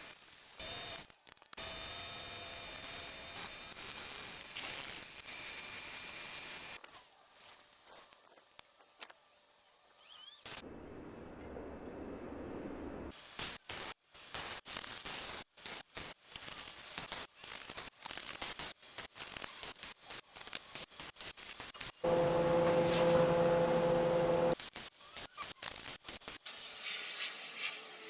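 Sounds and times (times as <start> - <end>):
welding arc crackling: 0.0 - 10.6, 13.1 - 22.1, 24.5 - 28.0
steady machine hum: 22.0 - 24.6.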